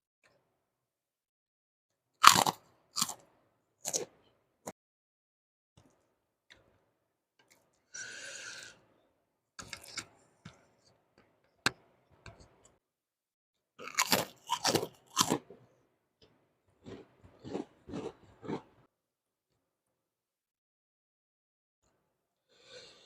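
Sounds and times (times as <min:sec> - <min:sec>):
person crunching and chewing: 0:02.2 - 0:03.2, 0:03.8 - 0:04.1, 0:09.6 - 0:10.1, 0:13.8 - 0:15.6, 0:16.8 - 0:18.8.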